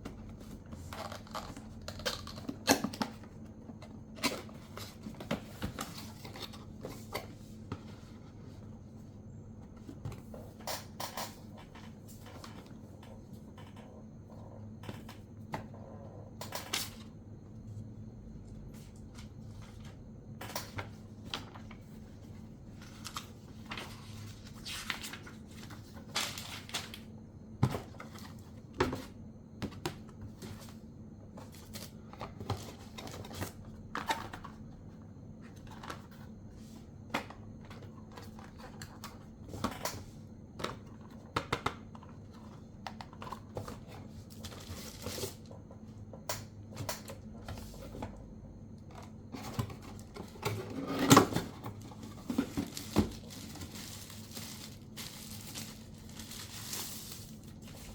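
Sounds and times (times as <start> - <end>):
packaging clicks and rustles: 0.3 - 7.3, 49.0 - 57.9.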